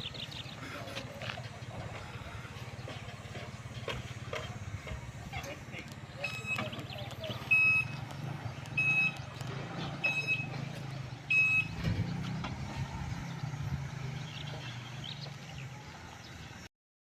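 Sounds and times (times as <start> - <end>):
short high electronic beeps: 7.4 - 8.0, 8.8 - 9.2, 10.0 - 10.6, 11.3 - 11.8.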